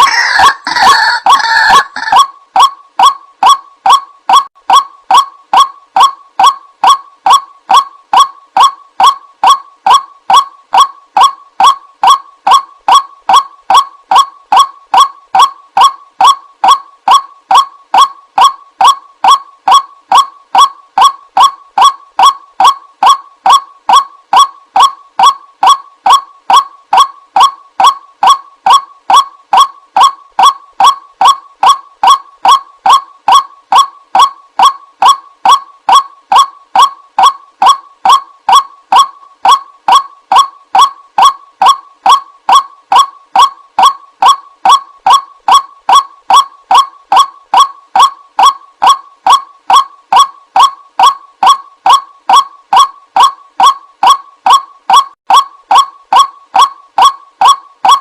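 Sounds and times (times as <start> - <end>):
waterhen honking call: 0.0 - 2.3.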